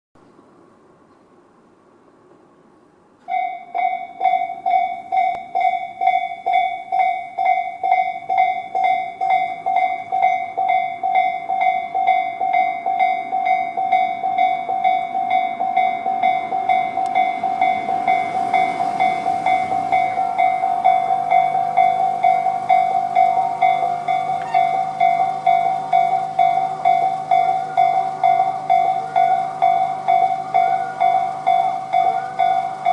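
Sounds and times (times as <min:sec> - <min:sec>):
approaching train: 0:00.2 - 0:32.9
level crossing warning bells: 0:03.2 - 0:32.9.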